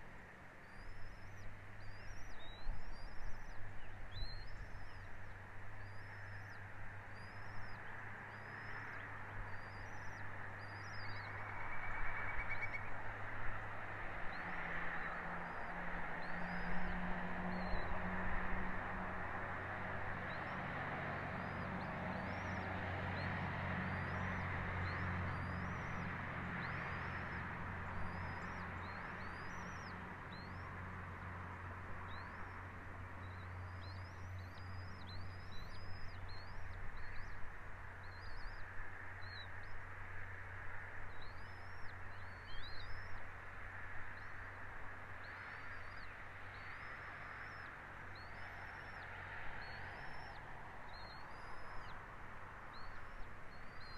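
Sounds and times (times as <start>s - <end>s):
bird chirping: 0.6s - 18.6s, 20.1s - 39.9s, 41.0s - 44.5s, 45.1s - 52.0s, 52.6s - 53.9s.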